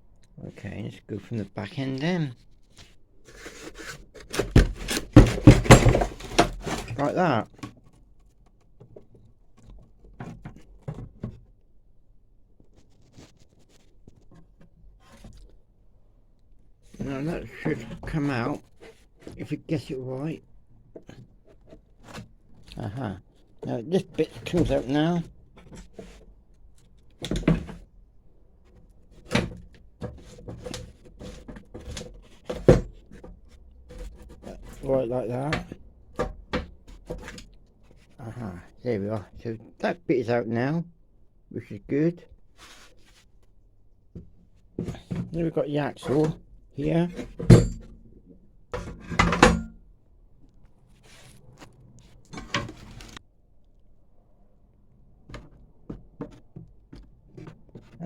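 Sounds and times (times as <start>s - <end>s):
metal parts knocking and rattling: 4.2s - 7.0s
knocks and clatter of parts: 4.2s - 11.5s, 24.2s - 27.9s, 28.6s - 38.1s, 44.2s - 49.9s, 52.2s - 53.2s.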